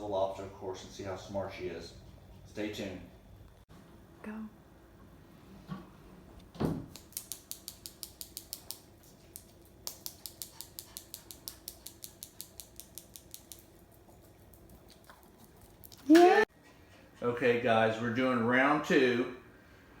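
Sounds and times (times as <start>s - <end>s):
dog claws clicking on hard floor: 6.9s - 16.2s.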